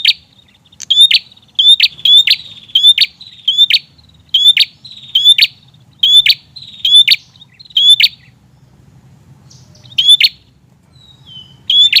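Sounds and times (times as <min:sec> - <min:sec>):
bird chattering calls: 0:00.0 - 0:08.4, 0:09.4 - 0:12.0.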